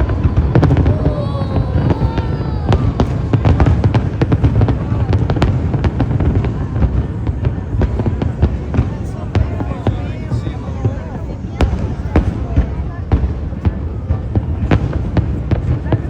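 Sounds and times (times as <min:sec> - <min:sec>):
fireworks cracking: 0:00.0 - 0:09.7.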